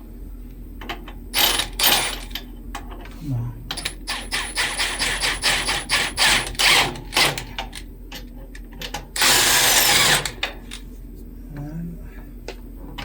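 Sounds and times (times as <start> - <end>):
impact wrench clicking and rattling: 1.4 - 2.4, 3.7 - 7.6, 9.2 - 10.8
impact wrench hammering: 3.8 - 7.4.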